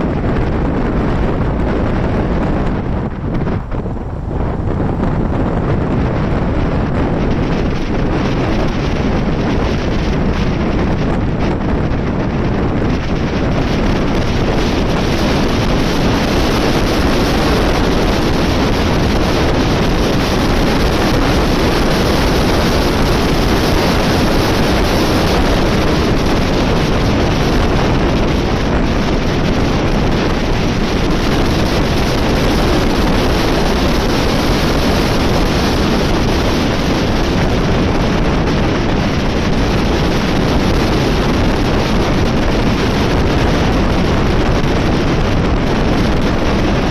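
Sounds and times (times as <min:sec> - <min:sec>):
wind blasting microphone: 0:00.0 - 0:46.9.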